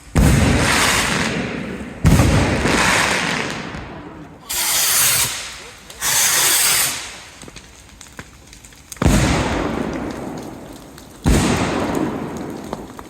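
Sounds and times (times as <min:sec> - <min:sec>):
firework bang: 0:00.0 - 0:07.6, 0:09.0 - 0:13.0
firework rocket hissing: 0:00.2 - 0:07.8.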